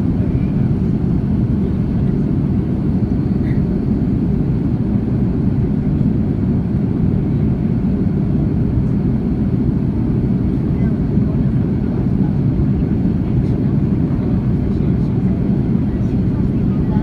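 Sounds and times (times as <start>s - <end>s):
airliner cabin engine rumble: 0.0s - 17.0s.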